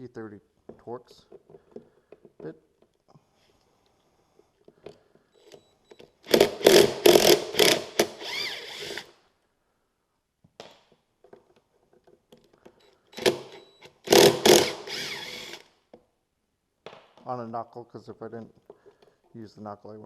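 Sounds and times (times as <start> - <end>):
impact driver hammering: 6.3 - 9.0, 13.2 - 15.6
impact driver spinning with whine: 6.3 - 9.1, 13.2 - 15.6.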